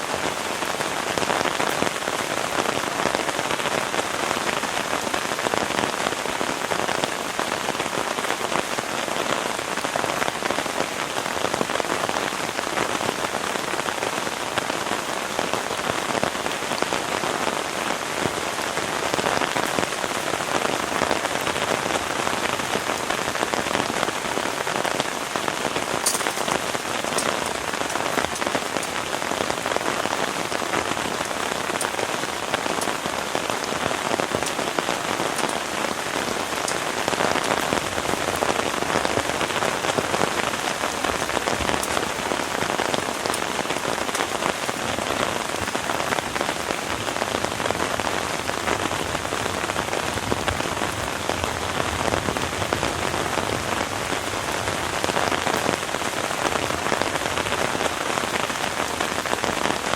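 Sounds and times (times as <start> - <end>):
heavy rain falling: 0.0 - 59.9
raindrop hits ticking: 19.1 - 59.6.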